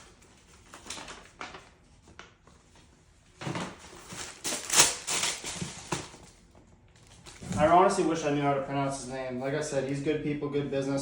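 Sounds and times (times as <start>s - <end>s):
shoe box rustling and handling: 3.4s - 6.3s.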